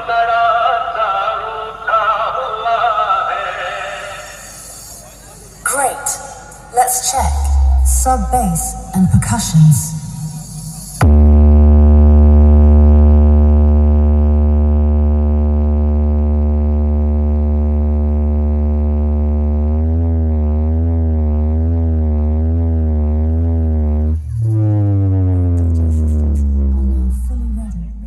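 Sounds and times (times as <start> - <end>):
synthesized sub-bass tone: 5.9 - 28.0.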